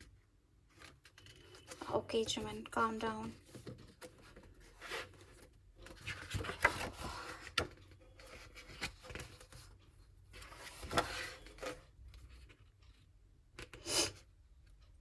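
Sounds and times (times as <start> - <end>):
paper rustling and sliding: 4.6 - 9.6, 10.4 - 11.8.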